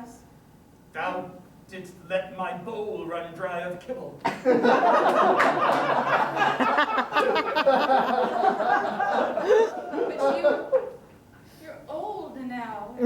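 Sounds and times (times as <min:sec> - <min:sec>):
audience laughing: 0:04.3 - 0:11.0.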